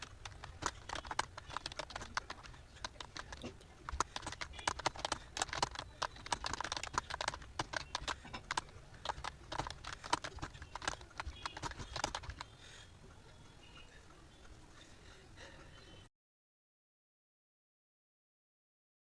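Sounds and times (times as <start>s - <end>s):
keyboard keystroke clicks: 0.0s - 12.5s.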